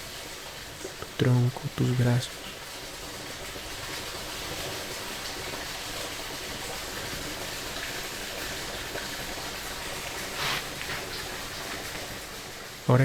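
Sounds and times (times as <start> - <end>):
creek water running: 0.0 - 13.0.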